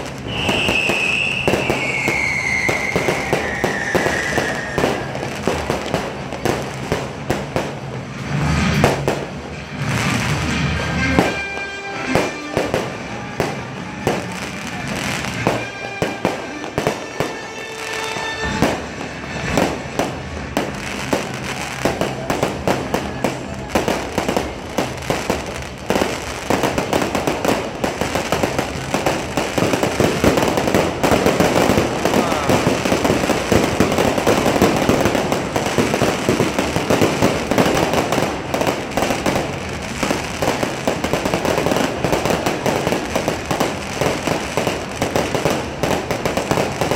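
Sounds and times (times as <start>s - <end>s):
fireworks banging and crackling: 0.0s - 46.9s
music: 9.6s - 42.8s.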